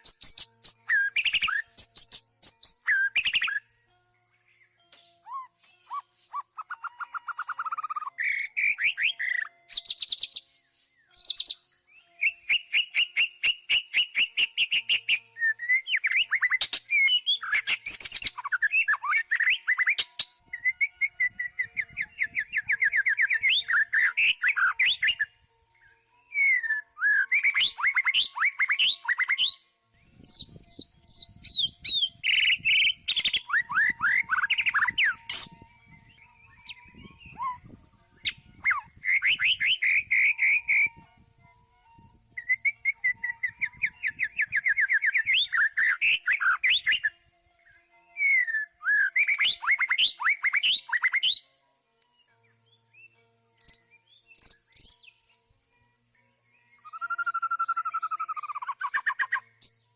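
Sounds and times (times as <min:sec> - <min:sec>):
bird singing with trills and whistles: 0:00.0 - 0:55.4, 0:56.4 - 0:59.9.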